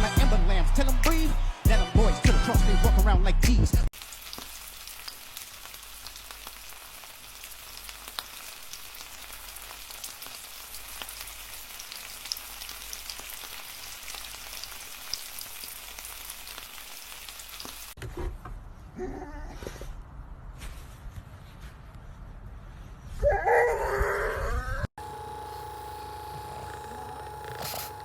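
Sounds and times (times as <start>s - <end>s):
crackling hiss with pops: 4.0s - 18.0s.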